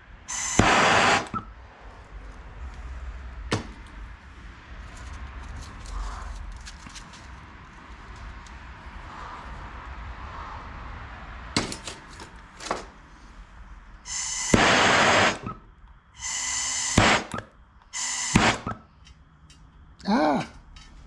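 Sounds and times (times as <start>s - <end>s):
power tool bursts: 0.3s - 1.4s, 14.1s - 15.6s, 16.2s - 18.8s.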